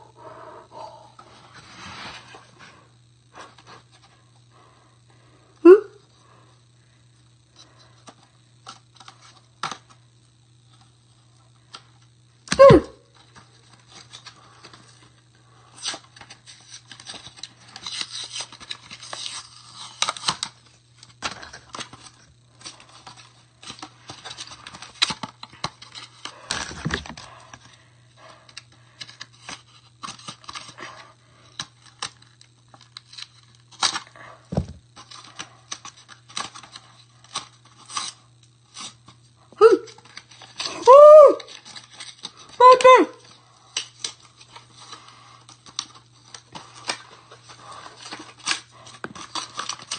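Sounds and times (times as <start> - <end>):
packaging rustling and tearing: 15.8 - 27.6, 40.0 - 42.6, 43.2 - 49.9.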